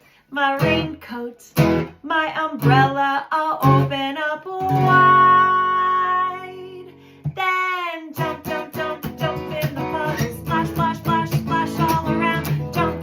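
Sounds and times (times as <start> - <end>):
person singing: 0.3 - 1.4, 2.0 - 13.0
acoustic guitar strumming: 1.6 - 2.0, 4.6 - 5.9, 8.2 - 13.0.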